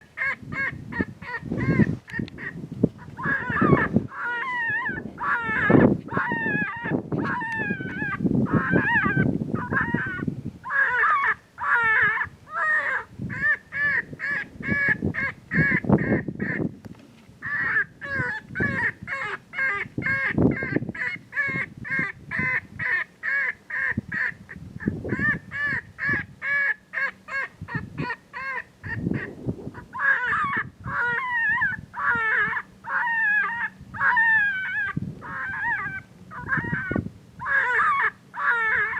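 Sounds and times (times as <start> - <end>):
high squalling distress cries: 3.2 - 14.0, 29.8 - 38.9.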